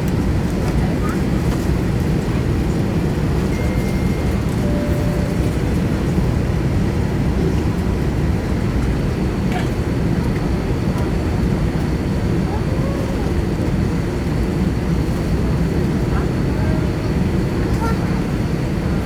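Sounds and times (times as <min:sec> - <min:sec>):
ventilation low rumble: 0:00.0 - 0:09.4.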